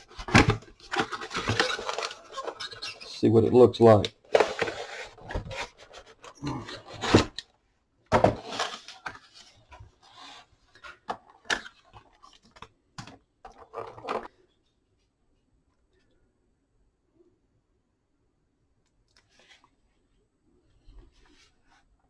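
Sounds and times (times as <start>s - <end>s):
cardboard box being opened: 0.0s - 3.1s, 4.3s - 7.4s
packaging rustling and scraping: 0.0s - 7.4s, 8.1s - 14.3s.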